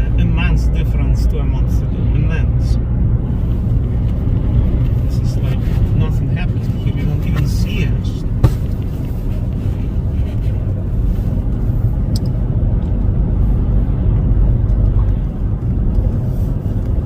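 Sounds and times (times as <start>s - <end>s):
car road rumble inside cabin: 0.0s - 17.0s.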